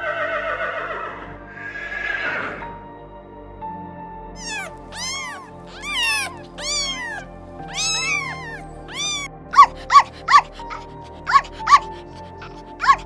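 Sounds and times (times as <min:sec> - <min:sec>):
cat meowing: 0:04.4 - 0:13.0.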